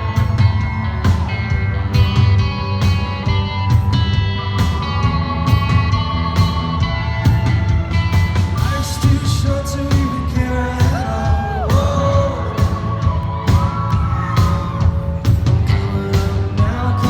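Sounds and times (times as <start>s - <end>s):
audience whooping: 0.0s - 3.2s, 7.4s - 16.1s
live band music: 0.0s - 17.0s.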